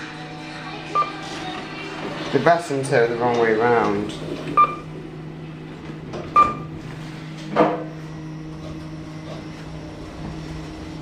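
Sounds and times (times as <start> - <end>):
low machine hum: 0.0 - 11.0
lift button beeps: 4.5 - 4.9, 6.3 - 6.8.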